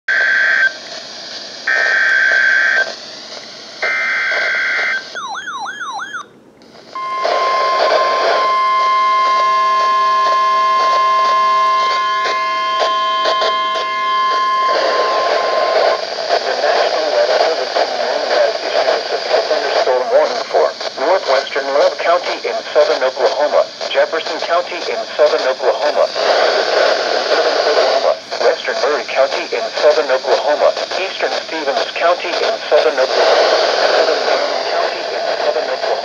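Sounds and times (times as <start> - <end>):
steady warning alarm tone: 1.7 - 2.9, 3.8 - 6.3, 6.9 - 17.2
digital header tone bursts: 7.0 - 16.0.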